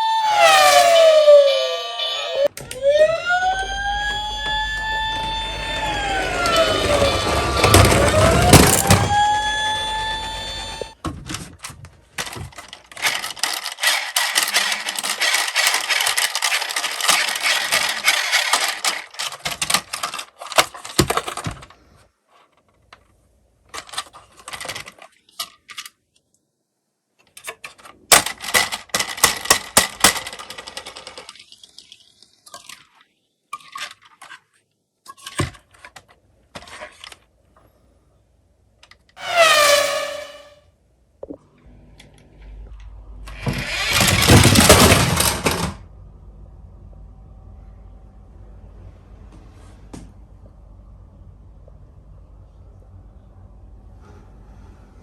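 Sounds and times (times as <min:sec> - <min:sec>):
toy cars clattering in a box: 0:06.2 - 0:09.2, 0:11.2 - 0:26.0, 0:27.2 - 0:37.3, 0:43.4 - 0:45.8.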